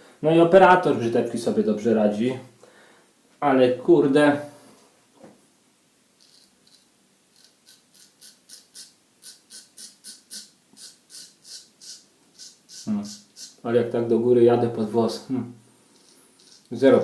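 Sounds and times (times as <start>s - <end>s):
straight razor scraping stubble: 6.2s - 13.6s, 16.0s - 16.9s.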